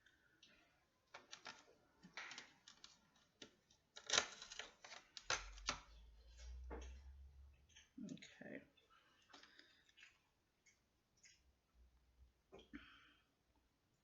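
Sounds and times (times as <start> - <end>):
hands clicking with cereal: 0.0 - 6.0, 9.2 - 11.4.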